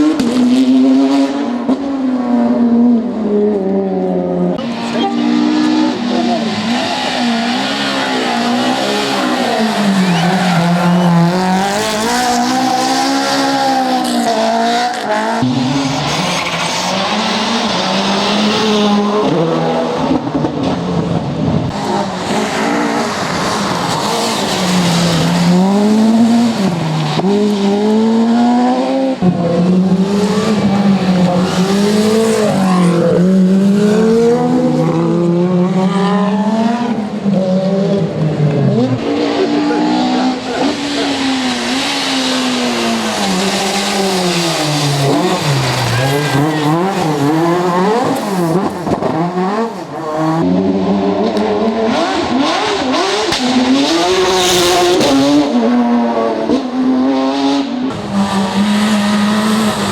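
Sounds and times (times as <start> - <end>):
rally car engines revving: 0.0 - 59.9
tyre squeal: 4.8 - 11.6.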